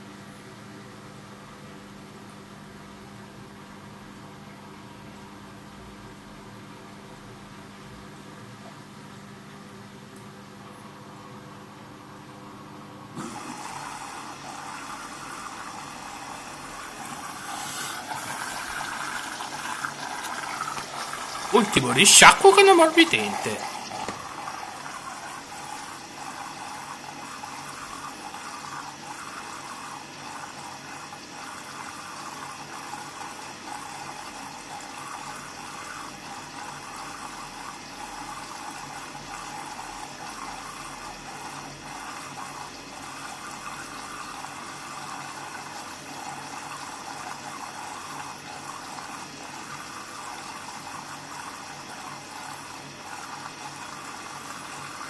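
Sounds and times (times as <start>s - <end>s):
washing machine filling with water: 0.0s - 55.0s.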